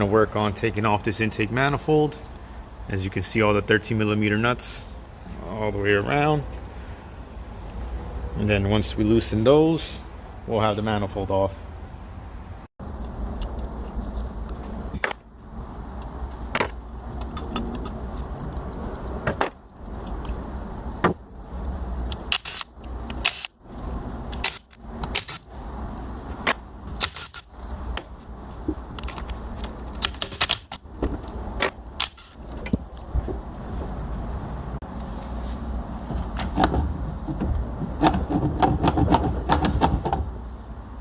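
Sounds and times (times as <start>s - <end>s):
metallic clicks of tools on nuts: 17.2s - 20.5s, 22.1s - 23.5s.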